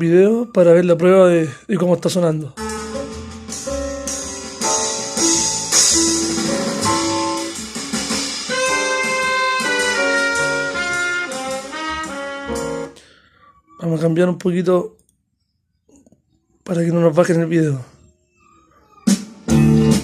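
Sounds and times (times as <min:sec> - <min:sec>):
jazz with horn melody: 0:02.6 - 0:13.0.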